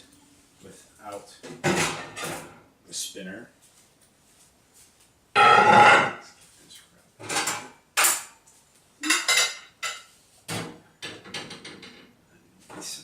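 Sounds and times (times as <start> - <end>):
plate and dishes clattering: 1.5 - 2.6, 5.4 - 6.2, 7.2 - 8.3, 9.0 - 12.1.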